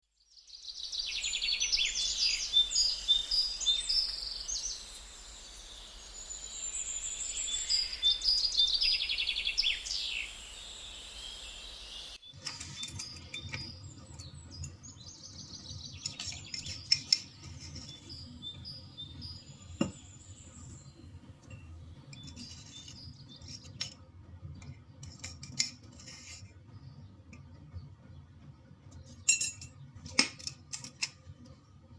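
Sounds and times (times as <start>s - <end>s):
small birds chirping and singing: 0.1s - 31.9s
light knocks and clinks: 29.1s - 31.2s.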